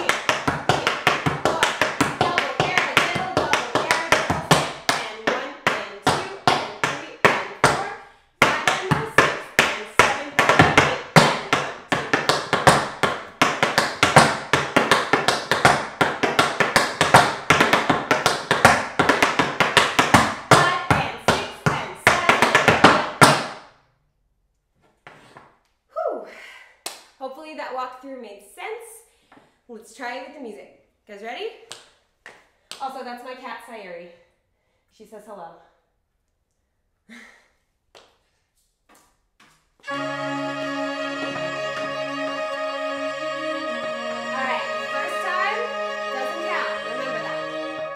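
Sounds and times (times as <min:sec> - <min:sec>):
tap shoes striking floor: 0:00.0 - 0:23.6.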